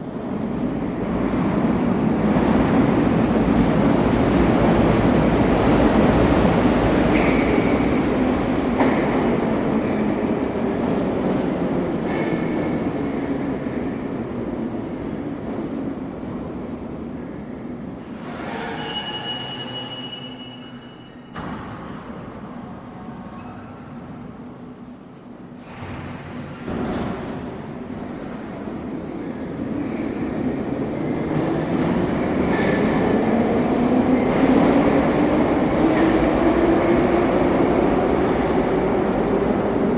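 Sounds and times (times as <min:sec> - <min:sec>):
subway train rumble: 0:00.0 - 0:39.9
wheel squeals: 0:18.1 - 0:21.4.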